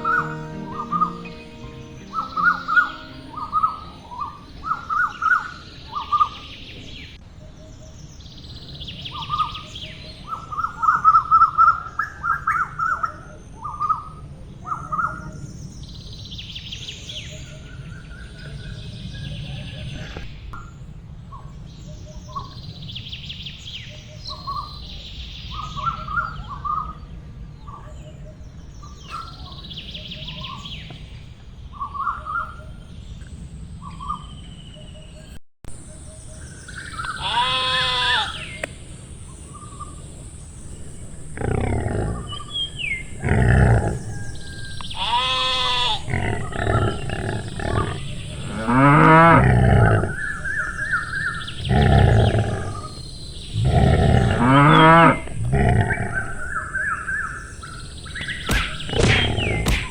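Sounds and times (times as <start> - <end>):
birds chirping: 0.0 - 7.2, 28.5 - 59.9.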